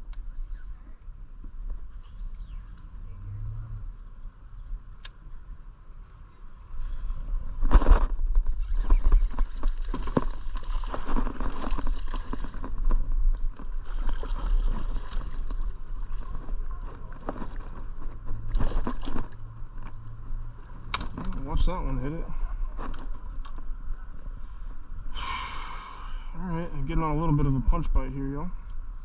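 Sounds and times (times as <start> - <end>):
water sloshing around boat: 13.5 - 19.4.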